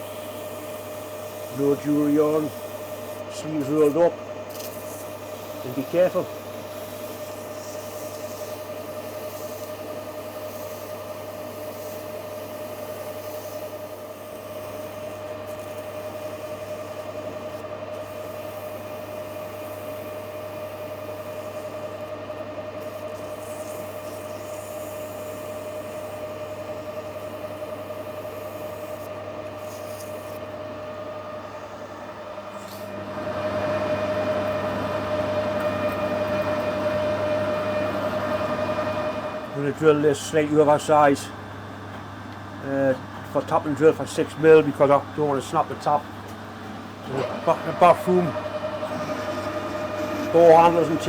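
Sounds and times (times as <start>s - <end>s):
metal lathe whining: 0.0s - 51.0s
emery tape rubbing on metal: 0.2s - 22.1s, 22.8s - 30.4s, 48.8s - 51.0s.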